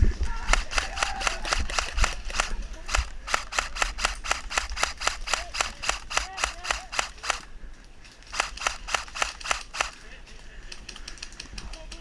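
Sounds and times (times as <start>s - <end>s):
airsoft rifle shots: 0.4s - 7.5s, 8.3s - 10.0s.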